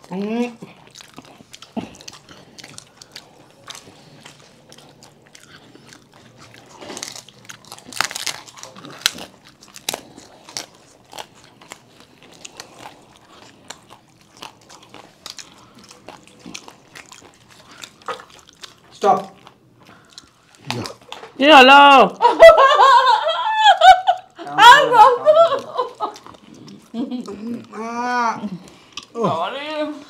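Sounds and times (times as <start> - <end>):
crisp food crunching: 0.0 - 21.4, 25.5 - 27.7
wet chewing: 0.0 - 21.5, 25.3 - 29.5.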